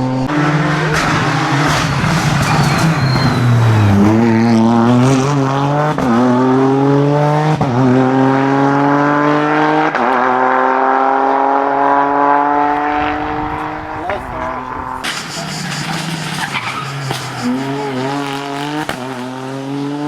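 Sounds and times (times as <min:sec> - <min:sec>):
car engine accelerating: 0:00.0 - 0:20.0.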